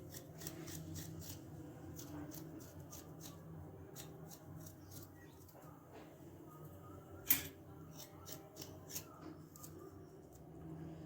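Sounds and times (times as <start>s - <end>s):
scraping skin off ginger: 0.0s - 5.7s, 7.9s - 9.8s.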